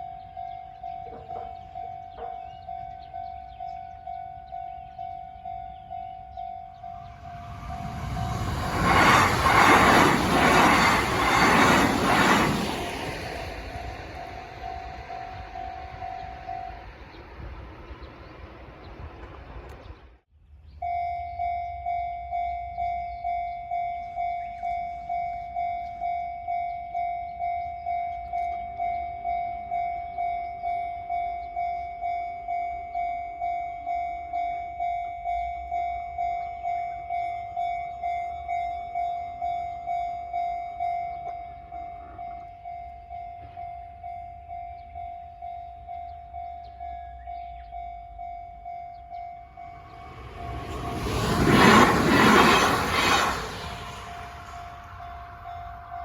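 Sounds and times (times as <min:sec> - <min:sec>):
level crossing warning bell: 0:00.0 - 0:17.5, 0:20.8 - 0:51.4, 0:53.9 - 0:56.0
rushing noise: 0:07.0 - 0:17.8, 0:49.4 - 0:56.0.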